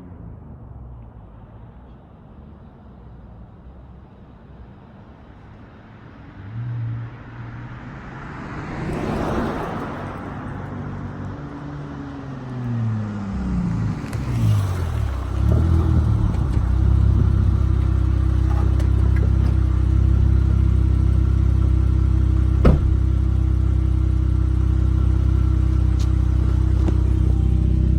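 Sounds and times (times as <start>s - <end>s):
car engine low drone: 0.0s - 27.9s
exhaust pop: 14.0s - 23.6s, 25.3s - 27.9s.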